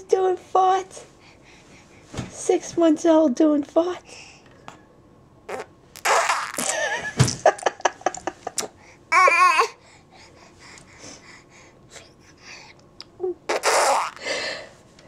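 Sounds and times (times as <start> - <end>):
baby laughing and babbling: 9.1 - 9.8
baby squealing: 13.5 - 14.2
baby blowing raspberries: 13.5 - 14.5.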